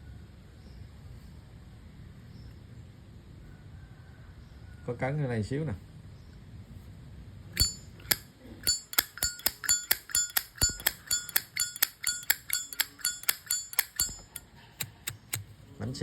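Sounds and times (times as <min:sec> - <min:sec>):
lighter lid clicking open and shut: 0:07.6 - 0:15.5.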